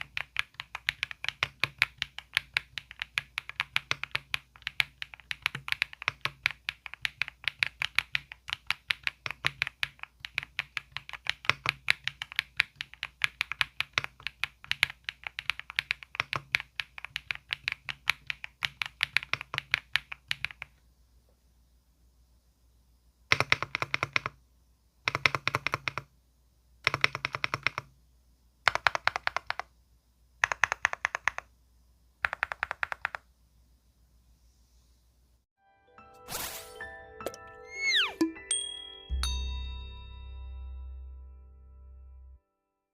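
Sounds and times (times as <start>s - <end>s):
mechanical keyboard typing: 0.0s - 20.8s, 23.3s - 24.4s, 25.1s - 26.1s, 26.8s - 27.9s, 28.6s - 29.7s, 30.4s - 31.5s, 32.2s - 33.3s.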